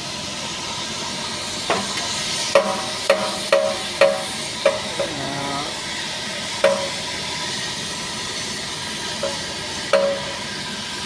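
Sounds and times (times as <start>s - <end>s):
steady hiss: 0.1s - 11.0s
sharp ringing knocks: 2.6s - 5.2s, 6.6s - 7.0s, 9.2s - 10.4s.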